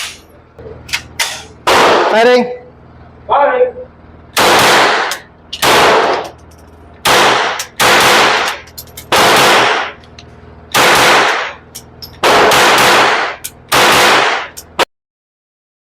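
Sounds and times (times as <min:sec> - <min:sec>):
suppressed pistol shots: 0:00.9 - 0:02.2, 0:04.4 - 0:06.4, 0:07.0 - 0:10.0, 0:10.7 - 0:11.6, 0:12.2 - 0:14.6.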